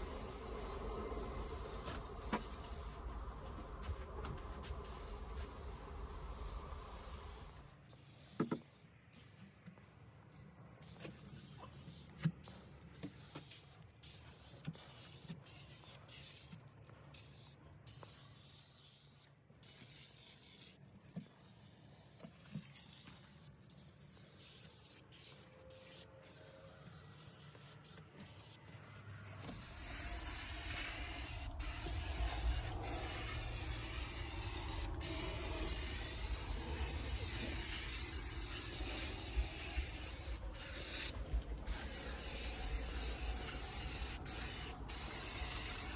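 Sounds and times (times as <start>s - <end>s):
insecticide spray hissing: 0.0s - 3.0s, 4.8s - 7.8s, 29.5s - 45.9s
low rumble: 0.0s - 7.2s, 29.6s - 43.6s.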